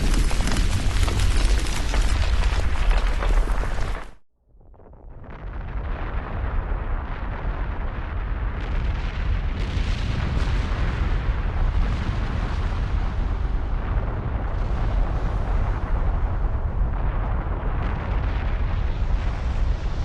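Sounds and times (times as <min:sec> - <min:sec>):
sharp cracks: 0:00.0 - 0:04.2
deep volcanic rumble: 0:00.0 - 0:20.0.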